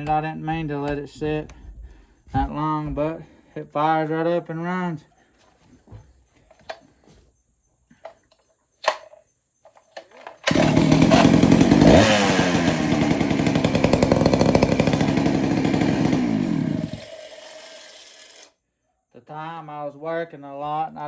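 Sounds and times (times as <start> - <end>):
chainsaw running: 10.2 - 18.5.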